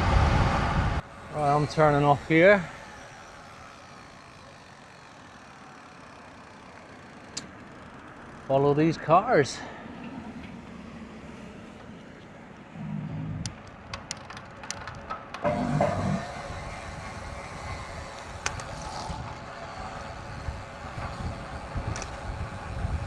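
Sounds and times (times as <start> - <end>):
cars passing: 0.0 - 16.4
car traffic rumble: 0.0 - 23.0
sharp clicks: 13.2 - 16.2.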